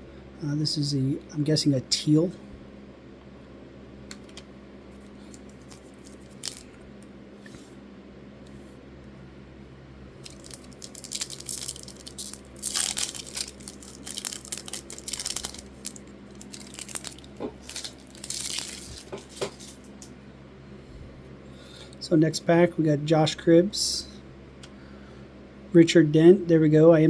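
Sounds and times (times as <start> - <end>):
card pack wrapper tearing: 5.2 - 6.8, 10.2 - 20.1.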